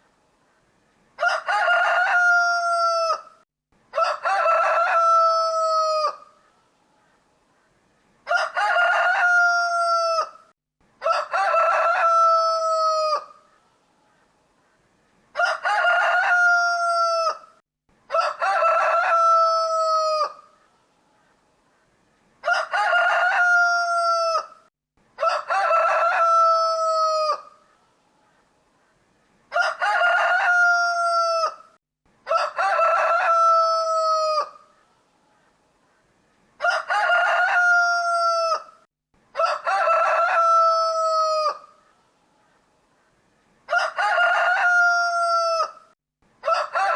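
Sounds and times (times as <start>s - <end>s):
rooster crowing: 1.2s - 6.3s, 8.3s - 13.4s, 15.4s - 20.5s, 22.4s - 24.6s, 25.2s - 27.6s, 29.5s - 34.7s, 36.6s - 41.8s, 43.7s - 46.9s.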